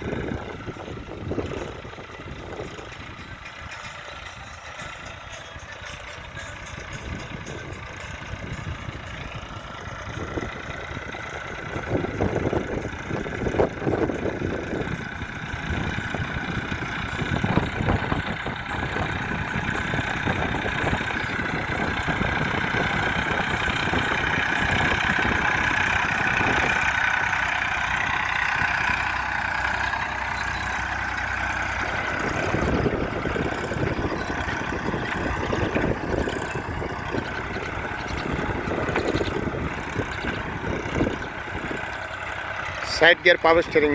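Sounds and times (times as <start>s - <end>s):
tractor diesel engine running: 0.0s - 43.9s.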